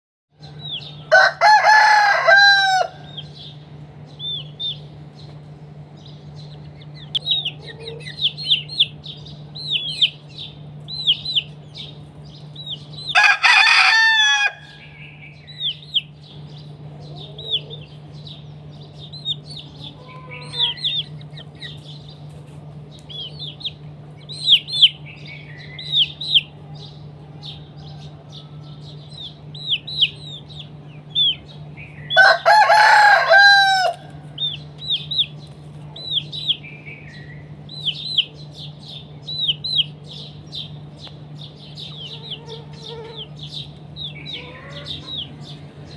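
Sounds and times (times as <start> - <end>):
steady low hum: 0.3 - 45.9
rooster crowing: 0.4 - 3.3, 13.1 - 15.0, 27.2 - 29.1, 32.1 - 34.3
chicks peeping: 0.4 - 45.9.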